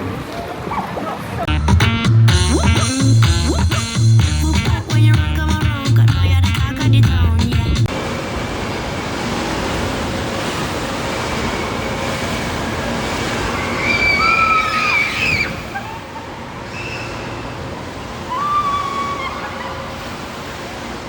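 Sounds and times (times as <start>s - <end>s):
rushing water: 0.0s - 7.2s, 7.8s - 21.0s
crowd noise: 0.0s - 20.1s
background music: 1.5s - 7.9s
high-pitched cries: 13.6s - 16.4s, 18.3s - 19.9s.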